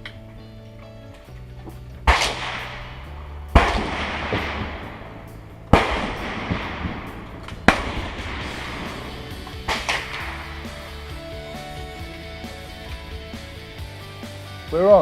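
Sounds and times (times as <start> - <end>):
background music: 0.0 - 15.0
rifle shots with echo: 2.1 - 11.2.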